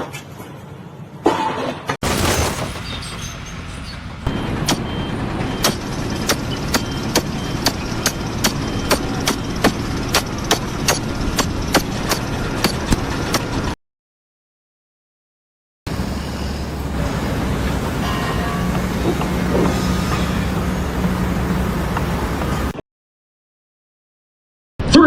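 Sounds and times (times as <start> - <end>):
machinery low rumble: 2.1 - 10.8, 15.9 - 22.8.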